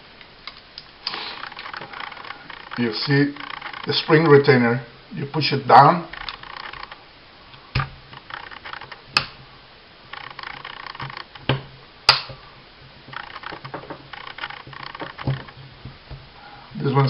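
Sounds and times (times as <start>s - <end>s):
metal parts scraping: 1.2s - 4.5s, 6.1s - 7.1s, 8.1s - 9.2s, 10.1s - 11.5s, 13.1s - 15.7s
small metal parts clicking: 1.4s - 4.4s, 6.1s - 9.3s, 10.1s - 12.3s, 13.1s - 15.6s.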